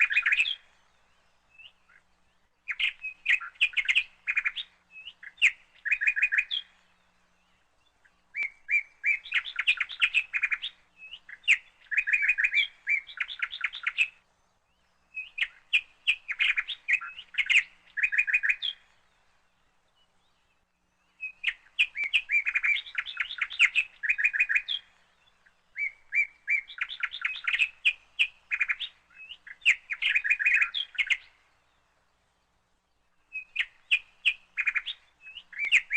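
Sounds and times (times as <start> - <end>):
songbird chirping: 0.0 - 35.9.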